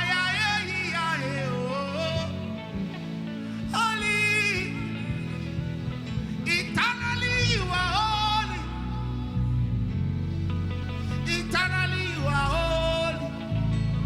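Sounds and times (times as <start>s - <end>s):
person singing with vibrato: 0.0s - 14.0s.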